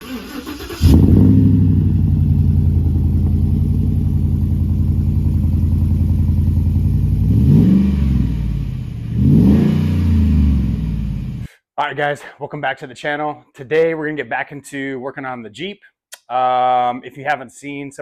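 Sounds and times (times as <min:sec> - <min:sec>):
car engine idling and revving: 0:00.1 - 0:11.5.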